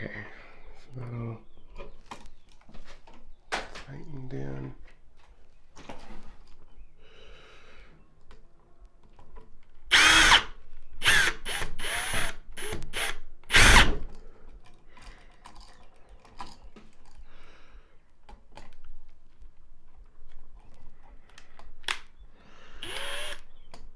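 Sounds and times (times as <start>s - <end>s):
power drill driving a screw: 9.9s - 14.0s, 22.8s - 23.5s.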